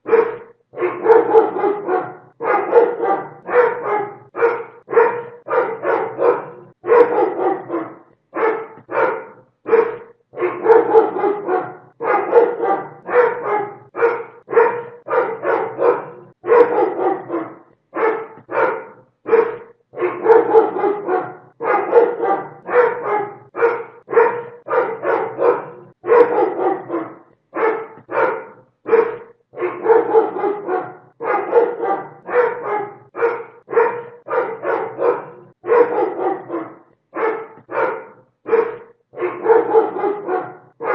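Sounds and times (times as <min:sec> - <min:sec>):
dog barking loudly: 0:00.0 - 0:40.9.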